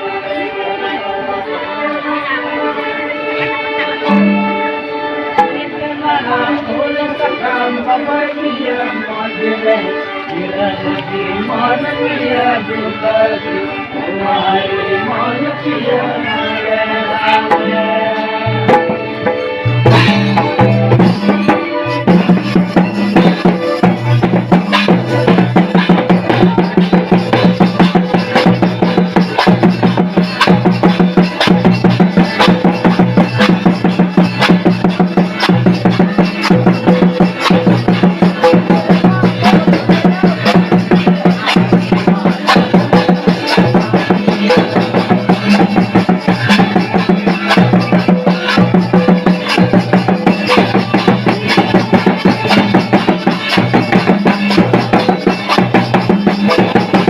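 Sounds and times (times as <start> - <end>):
music with dense drum beat: 4.0 - 4.7, 18.6 - 57.0.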